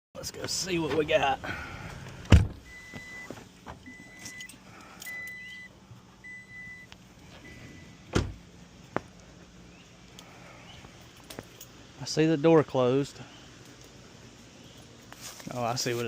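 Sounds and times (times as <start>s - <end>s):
car door thump: 2.3s - 2.6s, 8.1s - 8.4s.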